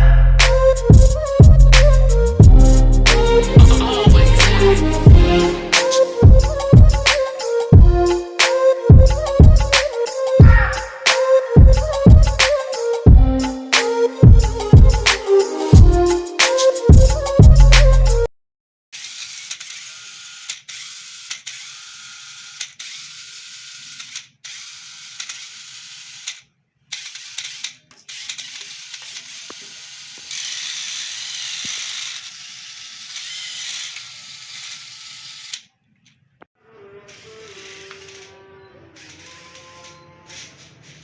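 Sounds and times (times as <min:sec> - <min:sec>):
toy car motor whirring: 0:19.0 - 0:35.8, 0:36.7 - 0:41.0.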